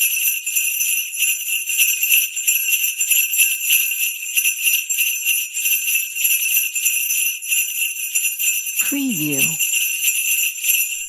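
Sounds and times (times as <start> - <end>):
jingle bells shaken: 0.0 - 11.0.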